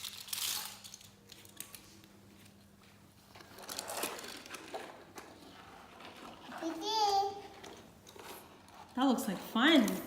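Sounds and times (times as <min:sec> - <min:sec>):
plastic toy cars rattling: 0:00.0 - 0:01.8, 0:03.4 - 0:10.0.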